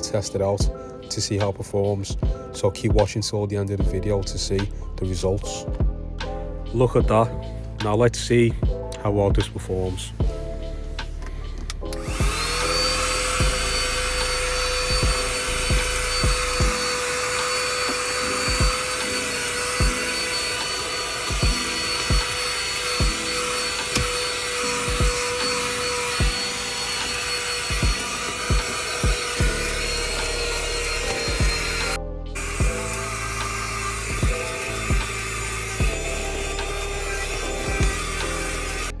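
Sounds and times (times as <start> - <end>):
vacuum cleaner running: 11.5 - 39.0.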